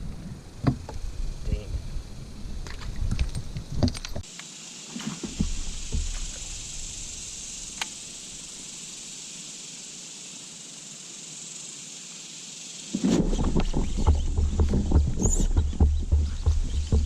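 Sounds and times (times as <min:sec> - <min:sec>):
cicadas droning: 0:00.0 - 0:17.0
sharp click: 0:07.7 - 0:08.0.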